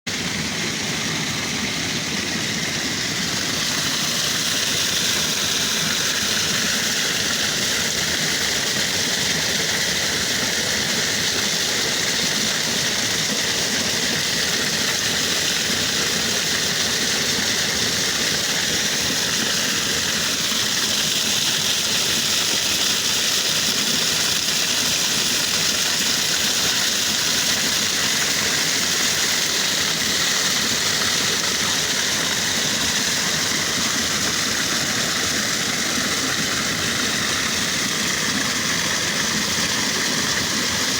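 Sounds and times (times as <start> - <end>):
creek water rushing over rocks: 0.1 - 40.9.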